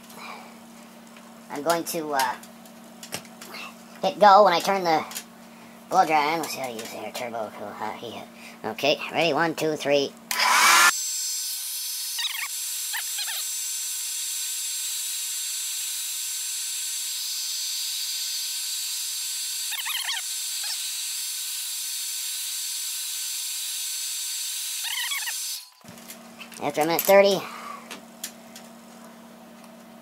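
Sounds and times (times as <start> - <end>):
hair dryer running: 10.3 - 25.7
high squeaks: 19.7 - 20.8, 24.8 - 25.8.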